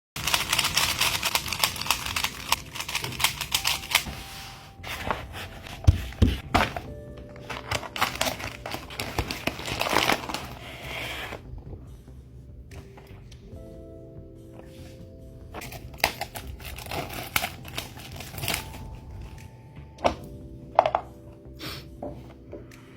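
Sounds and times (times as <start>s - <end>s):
packaging rattling: 0.2s - 4.2s, 4.9s - 11.4s, 15.6s - 19.3s
background music: 0.2s - 22.9s
plastic crinkling: 4.7s - 11.4s, 15.6s - 19.1s.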